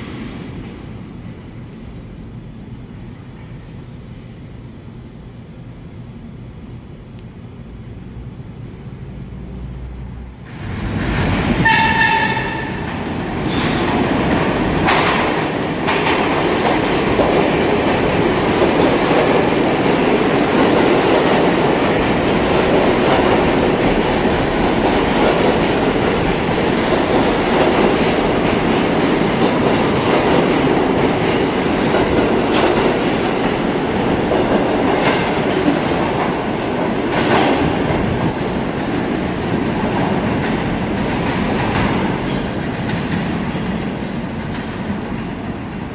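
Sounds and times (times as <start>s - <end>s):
train wheels rumbling on rail: 0.0s - 45.9s
clacks over rail joints: 12.0s - 38.3s.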